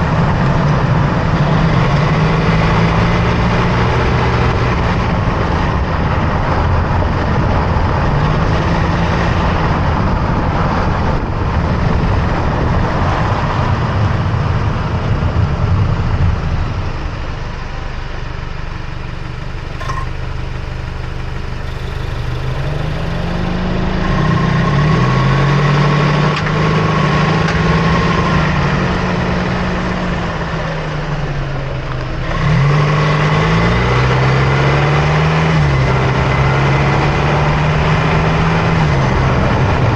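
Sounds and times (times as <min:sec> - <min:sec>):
road and tyre noise: 0:00.0 - 0:39.9
truck engine revving: 0:18.3 - 0:30.6, 0:32.2 - 0:39.9
thin whistle: 0:18.8 - 0:23.6.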